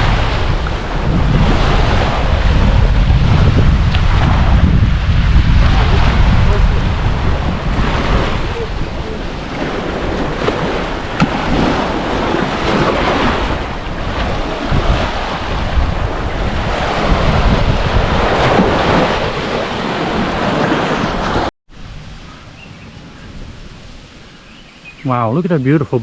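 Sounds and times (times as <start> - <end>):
wind buffeting microphone: 0.0 - 25.0
surf washing on shore: 0.0 - 25.4.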